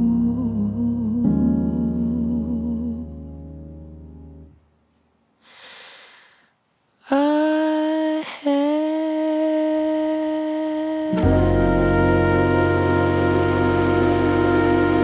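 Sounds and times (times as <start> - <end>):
short breath: 5.4 - 6.6
long held note: 11.1 - 15.0
jazz band sustained chord: 11.2 - 15.0.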